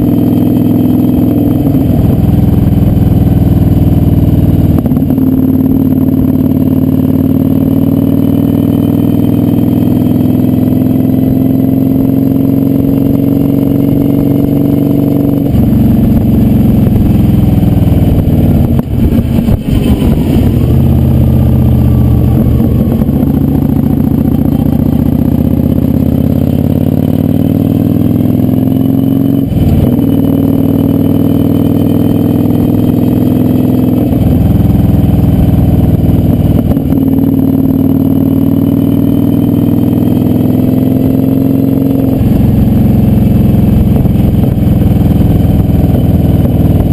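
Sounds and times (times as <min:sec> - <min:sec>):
motorcycle engine running at speed: 0:00.0 - 0:46.9.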